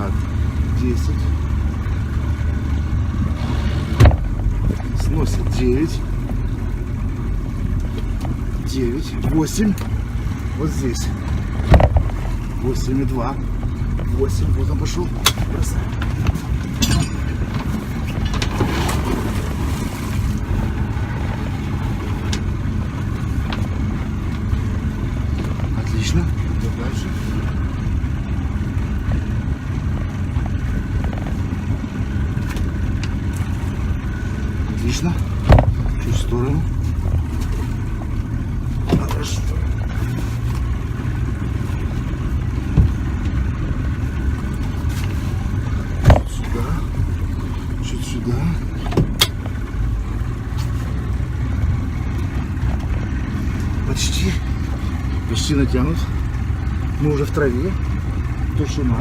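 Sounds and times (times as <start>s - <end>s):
motorboat engine running: 0.0s - 59.0s
dull thump: 4.0s - 4.4s, 11.6s - 12.2s, 35.4s - 35.8s, 46.0s - 46.4s.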